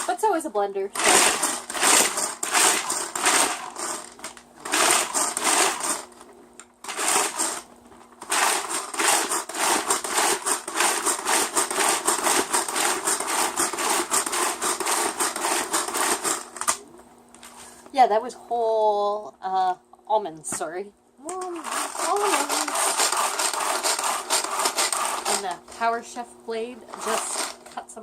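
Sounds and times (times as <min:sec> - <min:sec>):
pull-cord chopper pulls: 0:00.9 - 0:06.1, 0:06.8 - 0:16.8, 0:21.3 - 0:25.6, 0:26.9 - 0:27.8
blades rattling chopping almonds: 0:00.9 - 0:16.9, 0:21.3 - 0:26.0, 0:26.8 - 0:27.9.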